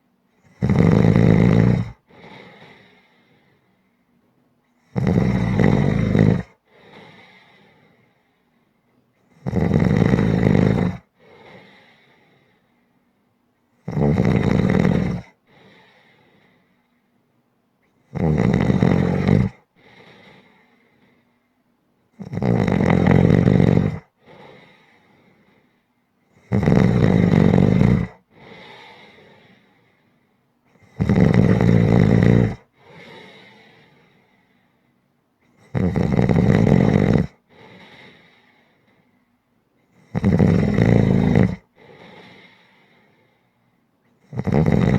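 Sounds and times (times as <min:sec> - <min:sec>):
person snoring loudly: 0:00.4 - 0:02.0, 0:04.9 - 0:06.6, 0:09.3 - 0:11.1, 0:13.8 - 0:15.4, 0:18.1 - 0:19.6, 0:22.2 - 0:24.1, 0:26.4 - 0:29.0, 0:30.8 - 0:33.6, 0:35.6 - 0:38.1, 0:40.0 - 0:42.5, 0:44.2 - 0:44.9.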